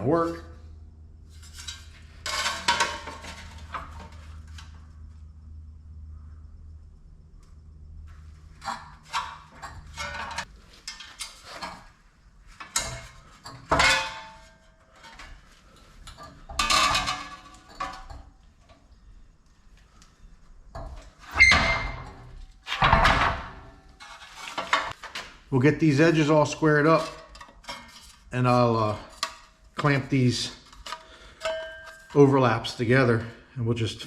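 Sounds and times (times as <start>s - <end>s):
sheet metal and tools clanking: 1.3s - 4.7s, 8.5s - 18.7s, 20.7s - 33.3s.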